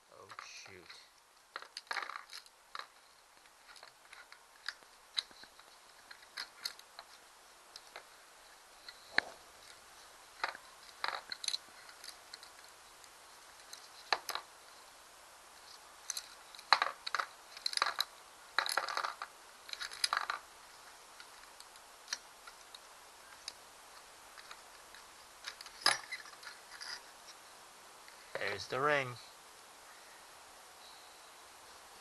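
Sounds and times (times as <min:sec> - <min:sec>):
steel bearing parts clinking: 0:25.4 - 0:27.1.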